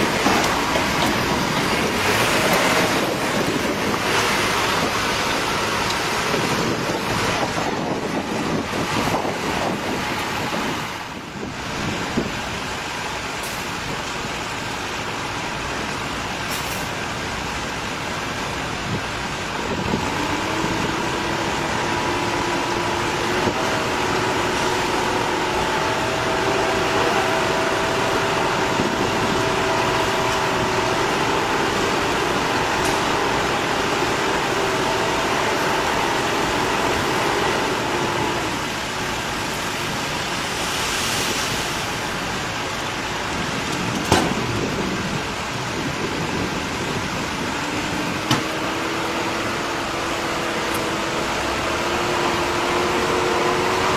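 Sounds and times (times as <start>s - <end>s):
traffic noise: 0.0s - 53.9s
droning engine: 19.3s - 53.9s
sharp knocks: 43.8s - 44.7s, 48.3s - 48.6s.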